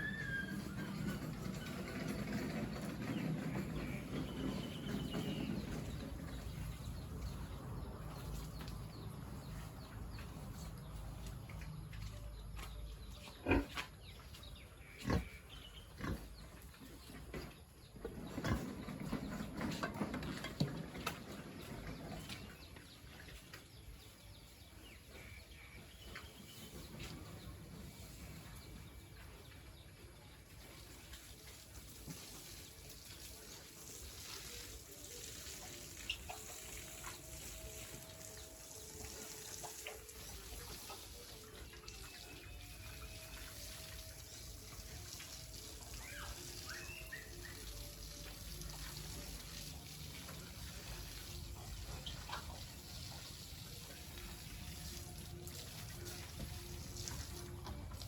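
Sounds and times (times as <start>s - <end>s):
pigs grunting: 13.3s - 14.1s, 14.9s - 17.2s.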